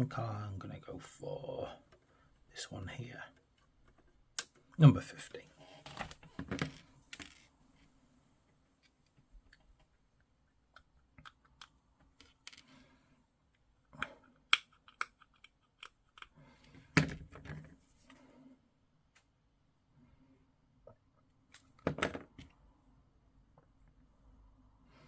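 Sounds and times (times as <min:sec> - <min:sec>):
plastic pieces clicking: 0:10.7 - 0:12.7, 0:14.0 - 0:16.4.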